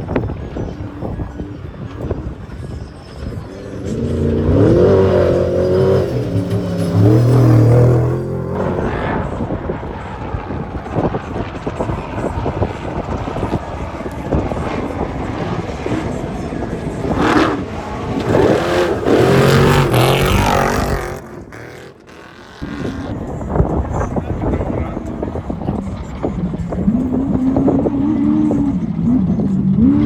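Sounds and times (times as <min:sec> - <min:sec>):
race vehicle engine revving: 0:03.6 - 0:09.6, 0:12.6 - 0:23.7, 0:26.6 - 0:30.0.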